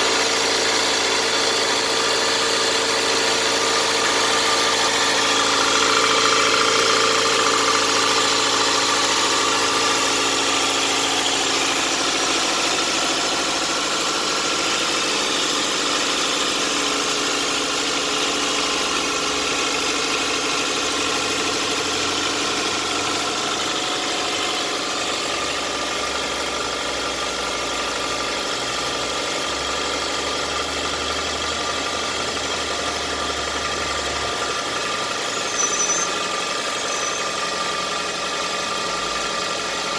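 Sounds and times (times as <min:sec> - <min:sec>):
engine knocking: 0:00.0 - 0:39.9
petrol engine idling: 0:00.0 - 0:39.9.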